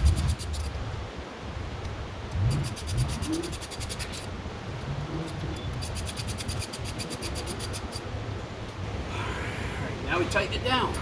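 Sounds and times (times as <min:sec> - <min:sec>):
hand ratchet clicking: 0:00.0 - 0:00.7, 0:02.3 - 0:04.3, 0:05.3 - 0:08.0.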